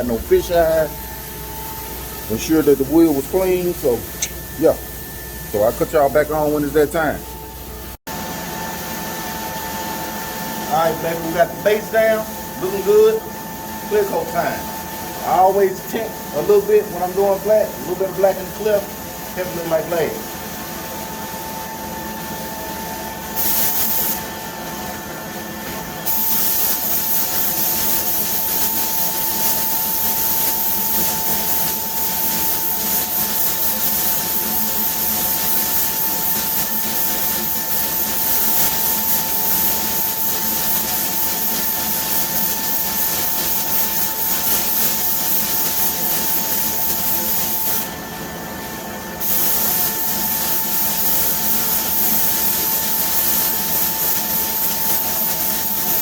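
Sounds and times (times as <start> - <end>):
steady hum: 0.0 - 56.0
paint spray gun hissing: 23.2 - 24.7, 26.0 - 48.0, 49.2 - 56.0.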